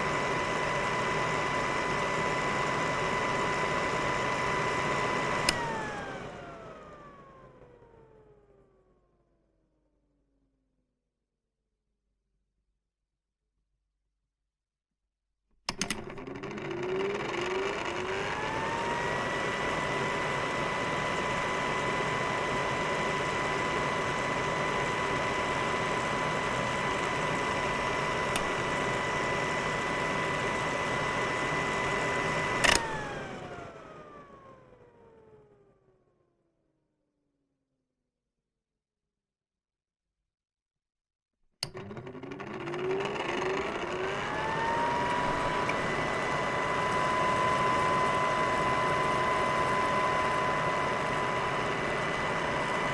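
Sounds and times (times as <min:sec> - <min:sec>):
hair dryer motor whine: 0:00.0 - 0:08.6, 0:15.8 - 0:35.6, 0:41.6 - 0:52.9
hair dryer switch click: 0:05.4 - 0:06.1, 0:28.2 - 0:28.7, 0:32.6 - 0:33.1.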